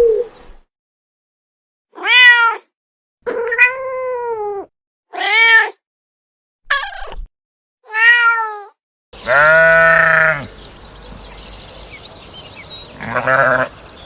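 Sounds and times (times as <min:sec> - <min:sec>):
cat meowing: 0:02.0 - 0:02.7, 0:03.3 - 0:05.8, 0:07.8 - 0:10.4
sheep bleating: 0:09.2 - 0:10.5, 0:12.9 - 0:13.8.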